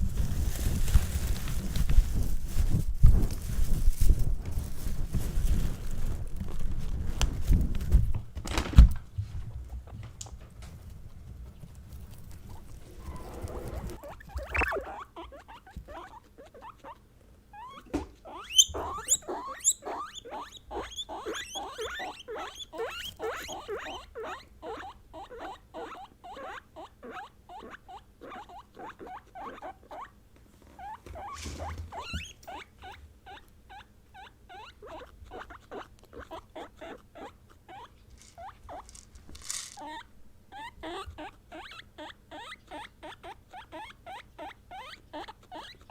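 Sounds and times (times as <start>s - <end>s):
rustling: 0.0s - 16.1s, 30.4s - 33.4s, 37.7s - 40.2s
guinea pigs squeaking: 11.5s - 30.2s, 30.8s - 45.9s.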